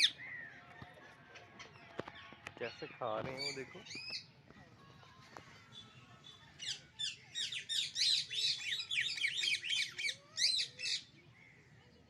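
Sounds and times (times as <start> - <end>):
parrots shrill calls: 0.0 - 0.4, 6.6 - 11.1.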